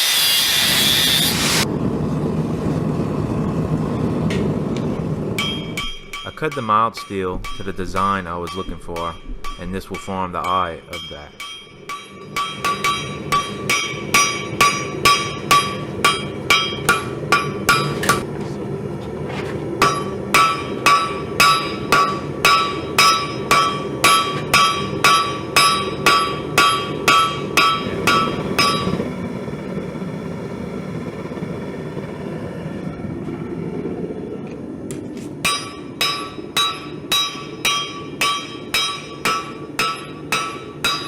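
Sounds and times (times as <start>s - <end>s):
hammer striking steel on anvil: 5.4s - 18.2s, 19.8s - 29.1s, 35.4s - 41.0s.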